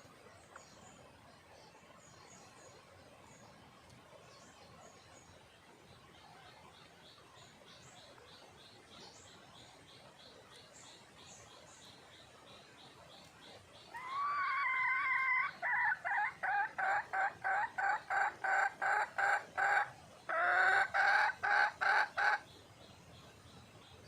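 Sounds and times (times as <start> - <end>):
hen calling: 13.9 - 22.5.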